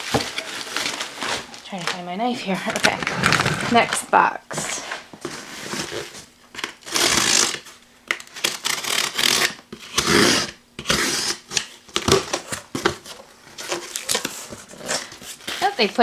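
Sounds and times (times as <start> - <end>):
tape and cardboard rustling: 0.0 - 16.0
knife cutting cardboard box: 4.6 - 16.0.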